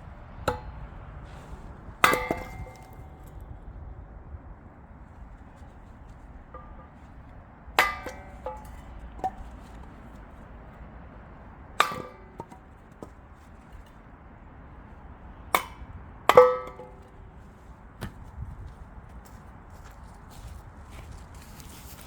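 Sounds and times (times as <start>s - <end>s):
axe chopping firewood: 0.4s - 3.4s, 7.8s - 10.0s, 11.7s - 13.3s, 15.6s - 17.2s.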